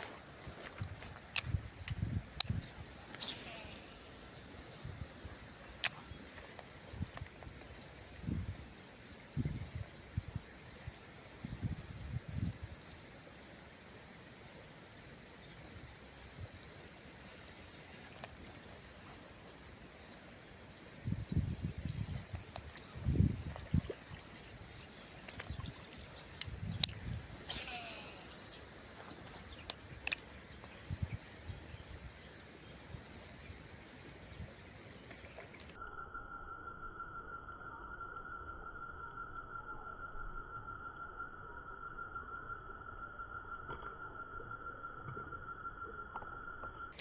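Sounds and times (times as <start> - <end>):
insects chirring: 0.0 - 47.0
sharp clicks: 26.3 - 27.0.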